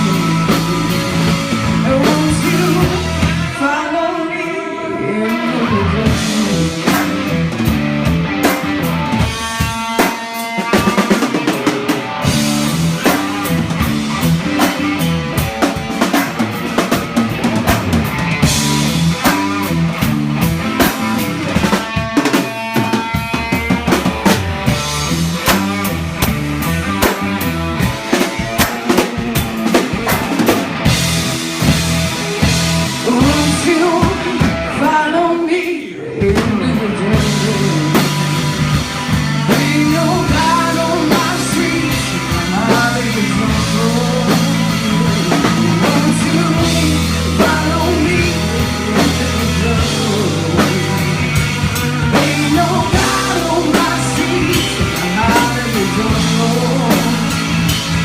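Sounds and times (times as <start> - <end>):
drum kits playing: 0.0 - 3.6, 5.9 - 35.0, 36.2 - 58.0
person singing: 0.0 - 7.6, 32.9 - 57.9
guitar: 0.0 - 58.0.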